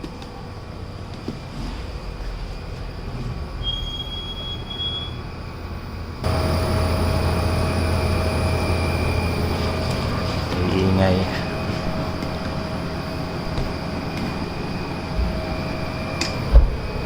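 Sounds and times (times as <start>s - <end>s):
air conditioner humming: 0.0s - 17.0s
shrill fan squeal: 0.4s - 17.0s.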